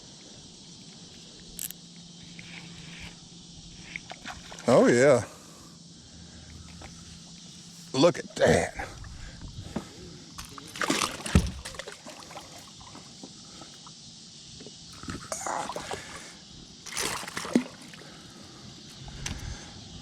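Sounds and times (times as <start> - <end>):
water splashing against kayak: 3.7 - 4.8, 10.4 - 13.4, 16.8 - 18.2.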